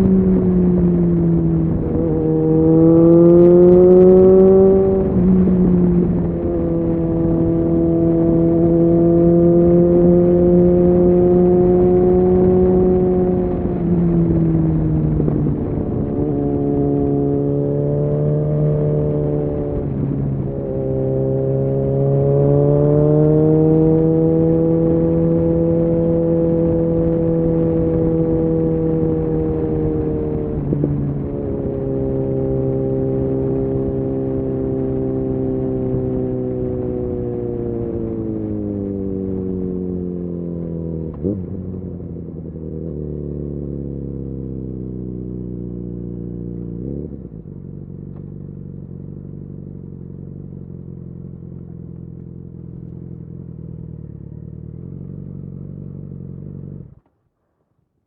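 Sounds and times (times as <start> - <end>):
wind noise: 0.0 - 43.0
motorcycle engine under way: 0.0 - 57.2.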